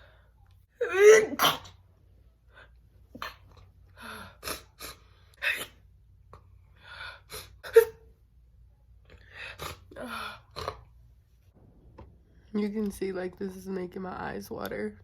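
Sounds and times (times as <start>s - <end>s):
woman stifled sneeze: 0.8s - 1.8s.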